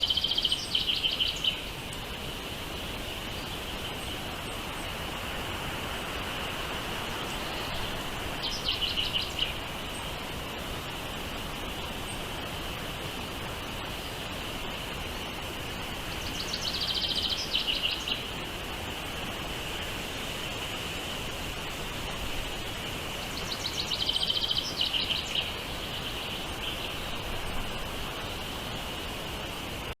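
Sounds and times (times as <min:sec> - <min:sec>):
even hiss: 0:00.0 - 0:30.0
birds chirping: 0:07.1 - 0:10.3, 0:16.0 - 0:18.4, 0:23.2 - 0:29.1.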